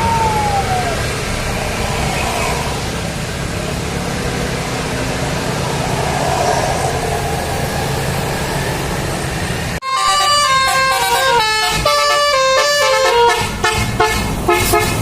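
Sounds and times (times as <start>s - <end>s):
bus engine running: 0.0s - 15.0s
musical horn tune: 9.8s - 15.0s.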